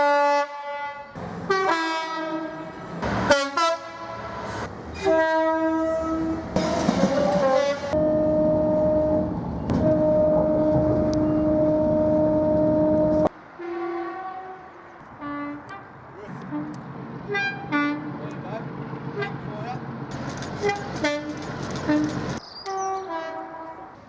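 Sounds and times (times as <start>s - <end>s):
train horn blasts: 0.0s - 18.4s, 19.1s - 19.6s, 20.5s - 24.0s.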